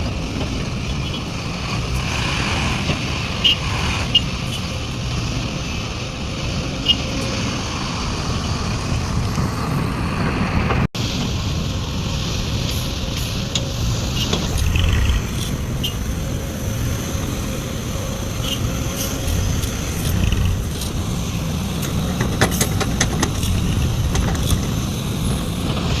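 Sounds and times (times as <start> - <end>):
diesel machinery rumbling: 0.0 - 26.0.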